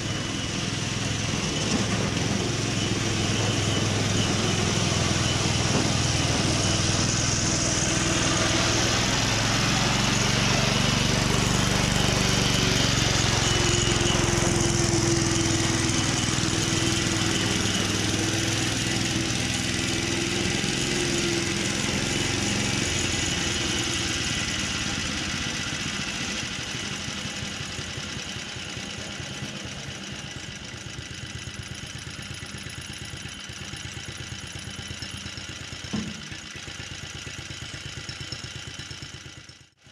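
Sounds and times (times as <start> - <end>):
lawn mower engine running: 0.0 - 39.9.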